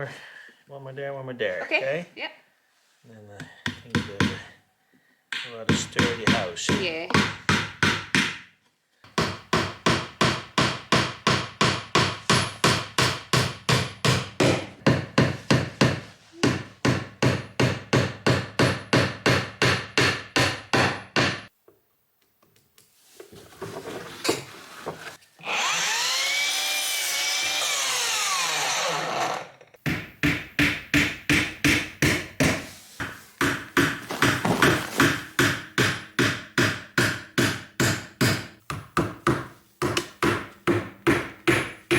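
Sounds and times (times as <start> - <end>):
rapid hand woodworking strokes: 23.8 - 29.5.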